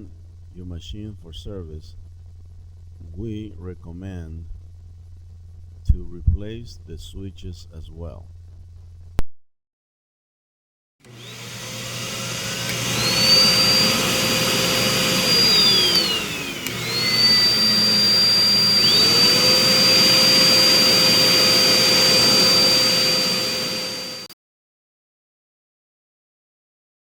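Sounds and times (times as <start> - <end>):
grooming blower motor whining: 4.4 - 6.0, 11.0 - 24.4.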